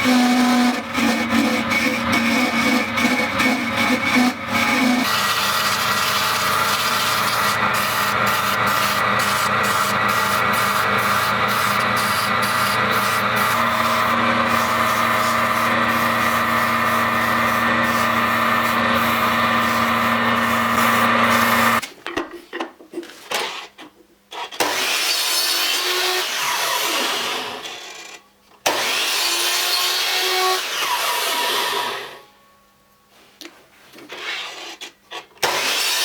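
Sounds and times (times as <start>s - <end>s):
cutting or grinding wood: 0.0s - 21.8s
woodworking machine running: 0.0s - 21.8s.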